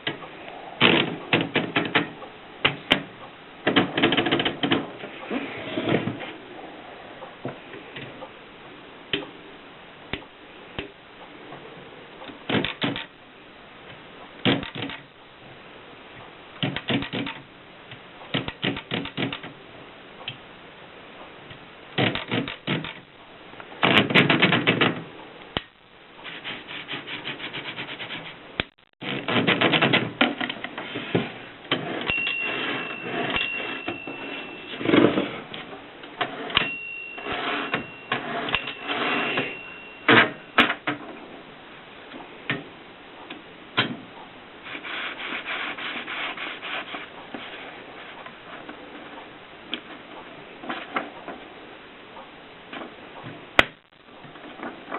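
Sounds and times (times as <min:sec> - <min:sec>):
typewriter keystroke clacks: 0:16.6 - 0:17.4.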